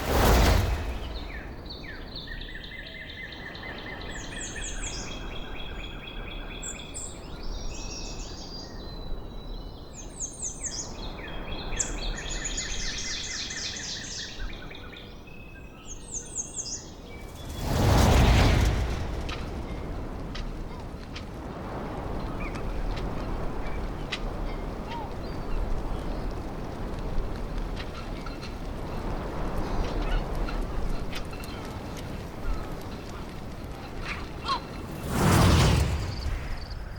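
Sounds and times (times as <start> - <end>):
low background rumble: 32.5 - 36.9.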